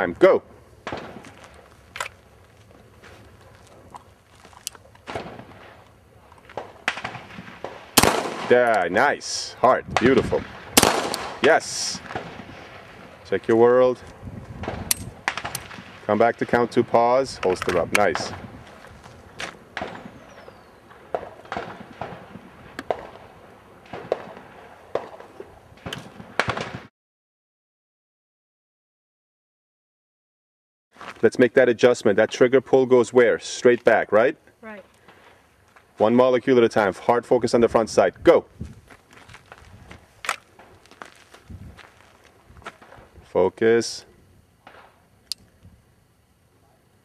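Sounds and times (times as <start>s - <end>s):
distant gunshots: 0.8s - 1.4s, 5.0s - 5.8s, 6.5s - 9.0s, 9.9s - 13.2s, 14.6s - 16.7s, 19.7s - 26.9s
pistol shots: 0.8s - 1.4s, 6.5s - 8.9s, 9.9s - 13.1s, 14.6s - 16.6s, 19.7s - 26.9s.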